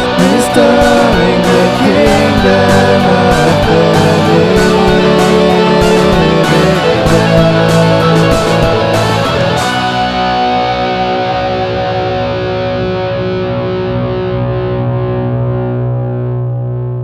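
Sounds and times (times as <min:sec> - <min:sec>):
drum hits: 0:00.0 - 0:09.9
distorted electric guitar chord: 0:00.0 - 0:17.0.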